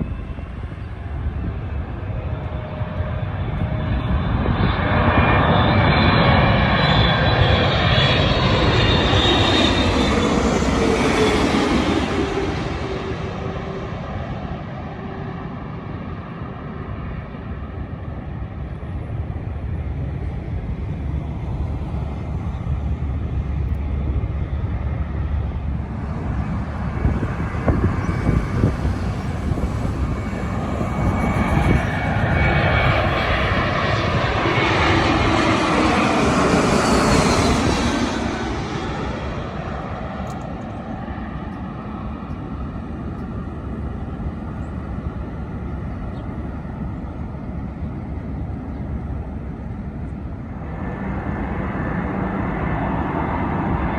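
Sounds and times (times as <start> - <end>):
jet airliner passing: 0.0 - 53.9
low rumble: 19.1 - 37.4.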